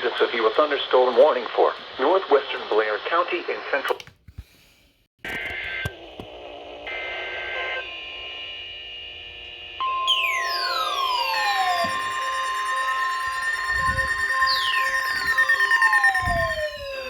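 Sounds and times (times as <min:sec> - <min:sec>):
shrill paired tone bursts: 0:09.8 - 0:17.0
steady single-pitch alert tone: 0:09.8 - 0:17.0
tones sweeping down in pitch: 0:09.8 - 0:17.0.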